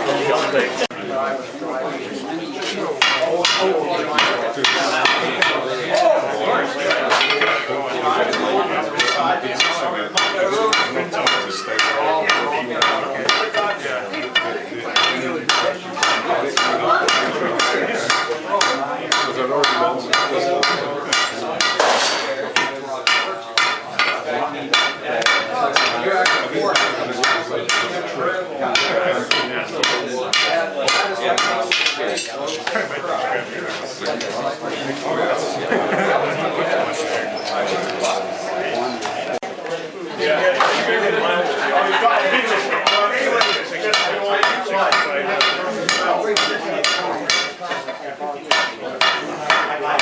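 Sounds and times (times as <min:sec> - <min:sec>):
hammer striking metal on anvil: 0:08.3 - 0:27.9, 0:28.7 - 0:32.0, 0:42.8 - 0:47.6, 0:48.5 - 0:50.0.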